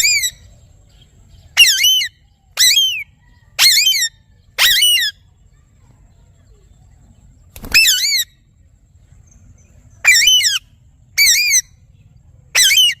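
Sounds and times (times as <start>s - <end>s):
parrot squawking: 1.6s - 3.0s, 7.7s - 8.3s, 10.0s - 11.7s, 12.5s - 13.0s.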